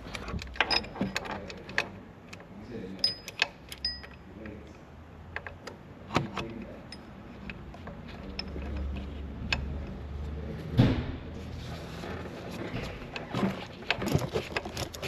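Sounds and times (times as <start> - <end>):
hand tools clinking on metal: 3.0 - 4.2.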